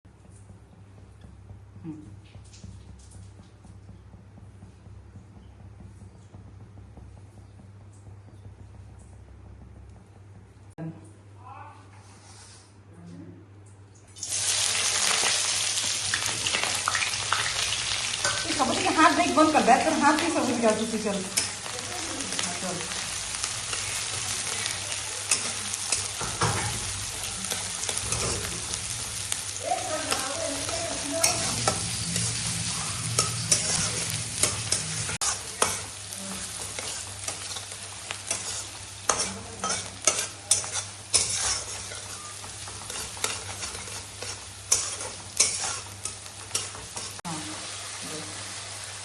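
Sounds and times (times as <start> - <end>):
curry sizzling in a pan: 14.2 - 49.0
utensil scraping a pan: 25.3 - 47.2.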